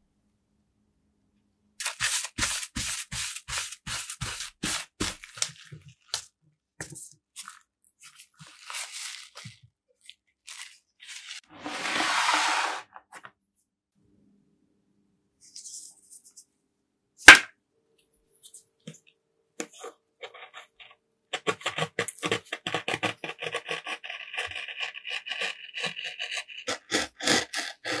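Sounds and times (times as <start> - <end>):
scraping strokes: 10.5 - 13.0.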